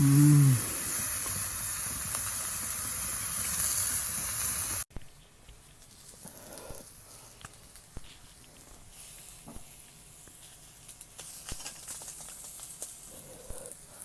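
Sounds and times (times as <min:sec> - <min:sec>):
food sizzling over fire: 0:00.0 - 0:04.9, 0:08.8 - 0:14.0
wood fire crackling and popping: 0:00.0 - 0:04.9, 0:07.3 - 0:13.2.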